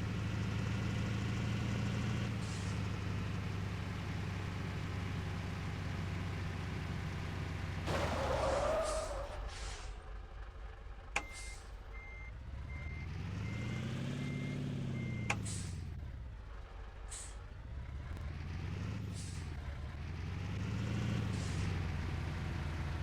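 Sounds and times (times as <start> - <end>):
truck diesel engine revving: 12.4 - 23.0.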